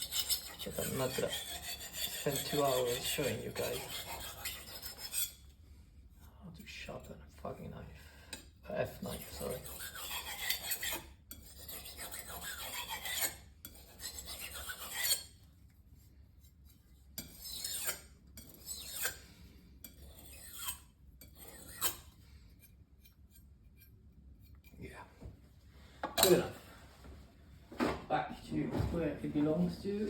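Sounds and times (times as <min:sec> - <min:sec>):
knife rasping on whetstone: 0:00.0 - 0:05.5, 0:08.3 - 0:15.4, 0:16.4 - 0:24.7.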